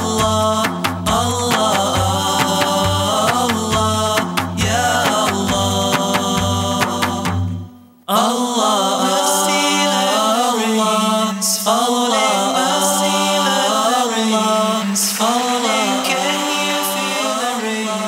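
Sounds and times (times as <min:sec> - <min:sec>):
music: 0:00.0 - 0:08.1
person chanting unaccompanied: 0:00.0 - 0:18.0.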